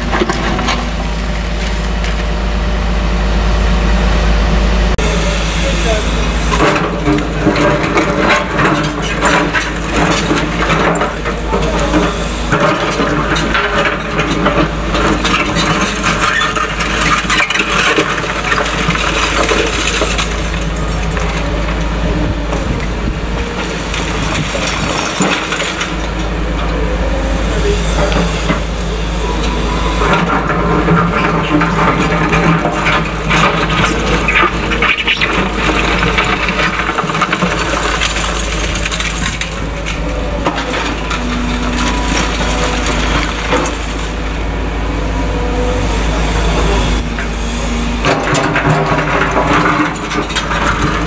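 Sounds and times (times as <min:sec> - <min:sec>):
excavator engine under load: 0:00.0 - 0:51.0
concrete rubble cracking and crunching: 0:06.5 - 0:26.8, 0:29.6 - 0:44.4, 0:48.0 - 0:51.0.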